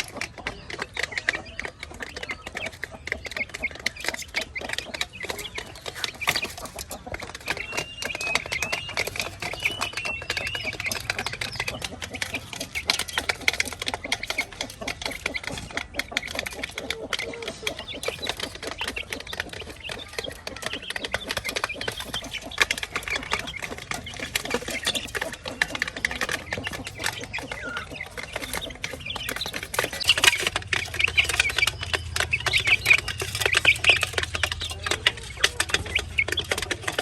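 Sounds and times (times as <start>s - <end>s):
chickens clucking: 0.0s - 37.0s
chickens pecking at feed: 0.0s - 37.0s.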